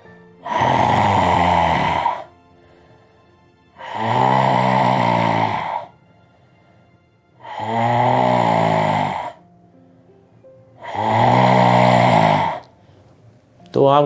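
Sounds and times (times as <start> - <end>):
man roaring exhalations: 0.4 - 2.8, 3.8 - 5.9, 7.4 - 9.4, 10.8 - 12.7.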